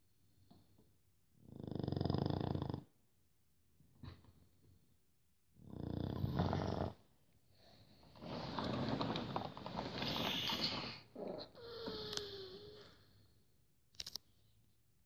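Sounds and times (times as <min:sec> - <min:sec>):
dog snoring: 0:01.4 - 0:03.0, 0:05.6 - 0:07.1.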